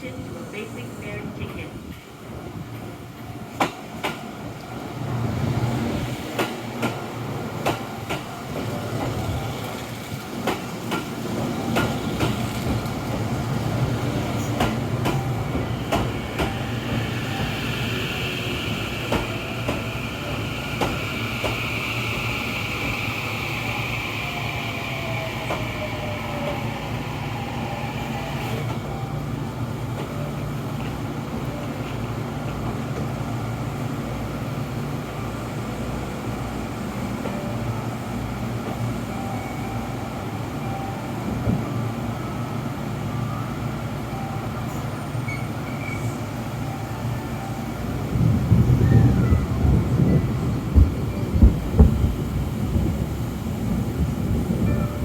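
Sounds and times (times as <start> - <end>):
electric train rumbling: 0.0 - 55.0.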